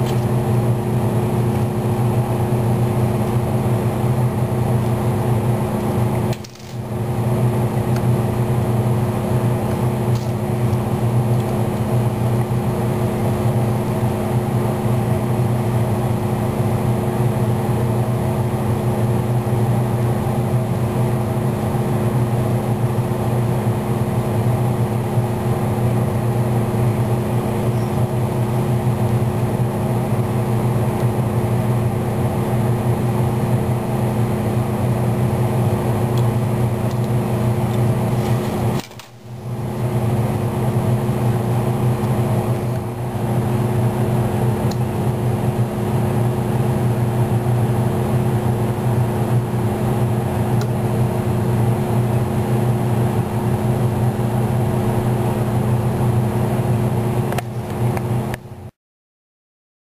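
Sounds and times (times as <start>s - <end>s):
machine hum: 0.0s - 58.7s.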